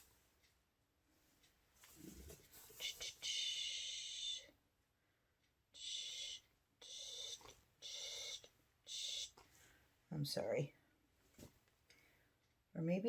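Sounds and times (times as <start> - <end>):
person whispering in airy hisses: 2.7 - 4.5, 5.8 - 9.4.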